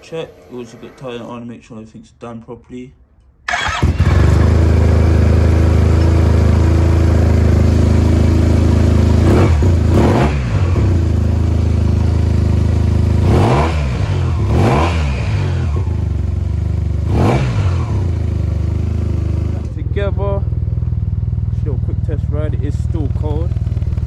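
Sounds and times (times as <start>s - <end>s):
engine revving: 0.0s - 1.6s, 3.5s - 20.5s
motorcycle engine starting: 3.4s - 24.0s
motorcycle engine idling: 3.5s - 13.3s, 15.3s - 24.0s.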